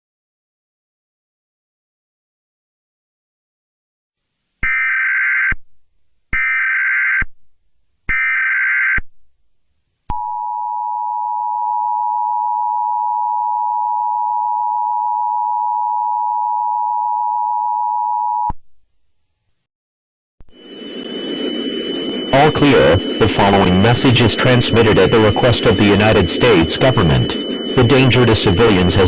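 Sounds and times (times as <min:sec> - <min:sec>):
two-tone attention signal: 0:20.5 - 0:29.0
warbling digital data tones: 0:20.5 - 0:29.0.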